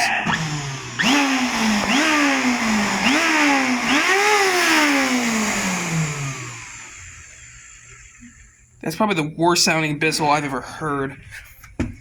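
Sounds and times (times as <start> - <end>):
vacuum motor whining: 0.0 - 8.6.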